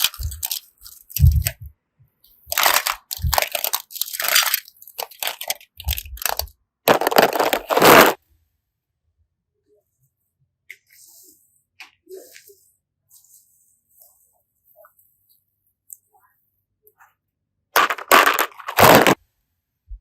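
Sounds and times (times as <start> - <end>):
crisp material crunching: 0.0 - 1.7, 2.5 - 8.2, 17.8 - 19.2.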